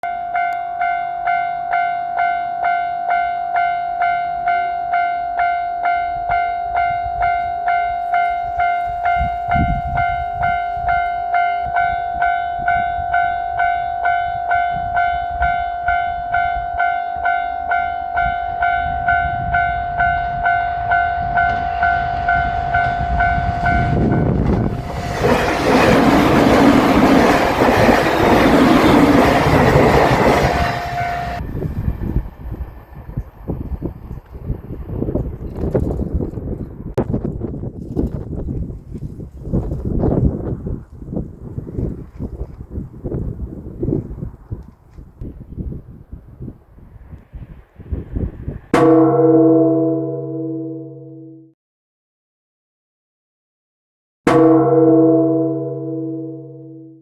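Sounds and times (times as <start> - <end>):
level crossing warning bell: 0.0 - 31.4
train roaring past: 0.4 - 37.0, 39.9 - 48.8
train rumble: 3.9 - 48.7
rail clatter: 20.2 - 34.5.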